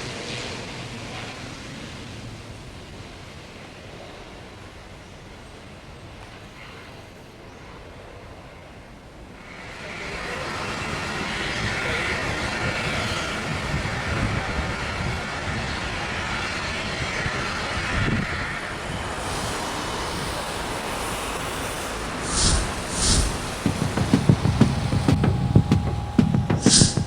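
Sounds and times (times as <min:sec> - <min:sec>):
jet engines roaring: 0:09.4 - 0:27.0.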